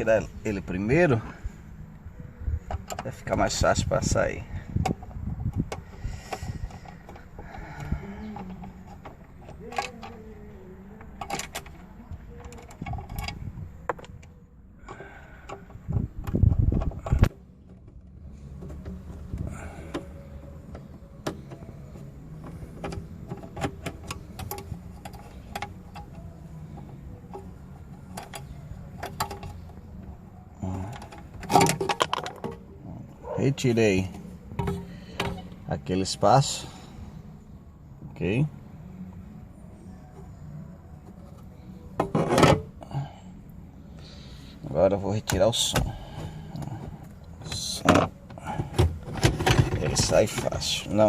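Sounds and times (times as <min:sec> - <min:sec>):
low rumbling handling: 0:00.0 - 0:51.0
plastic clatter: 0:31.0 - 0:32.6.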